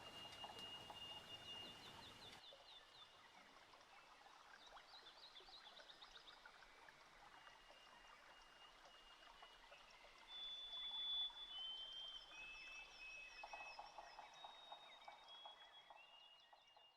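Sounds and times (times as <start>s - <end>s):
long high whistled bird notes: 0.0s - 2.3s
low pulsed bird call: 0.0s - 2.4s.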